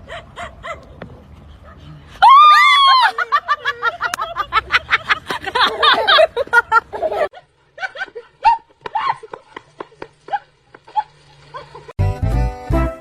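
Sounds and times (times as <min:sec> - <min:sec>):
bursts of laughter: 0:02.8 - 0:10.0.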